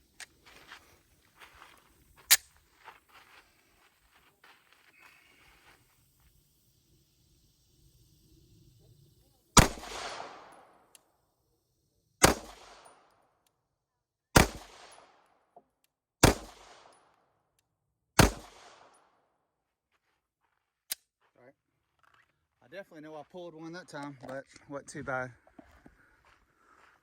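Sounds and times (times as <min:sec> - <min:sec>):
pistol shots with echo: 0:09.6 - 0:10.8, 0:12.2 - 0:13.0, 0:14.4 - 0:15.2, 0:16.2 - 0:17.0, 0:18.2 - 0:18.9.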